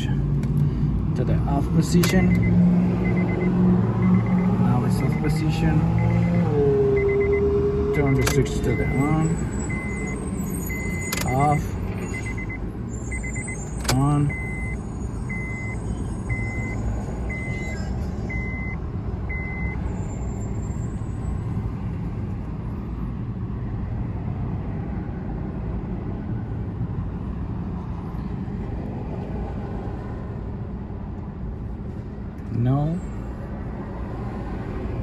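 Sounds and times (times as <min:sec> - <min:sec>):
short electronic beeps: 0:02.0 - 0:06.4, 0:07.0 - 0:19.8.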